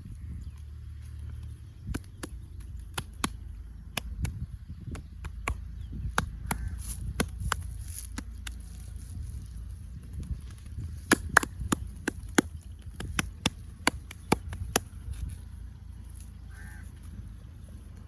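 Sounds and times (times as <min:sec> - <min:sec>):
steady low rumble: 0:00.0 - 0:18.0
hands slapping and tapping skin: 0:01.8 - 0:08.8, 0:11.0 - 0:15.4.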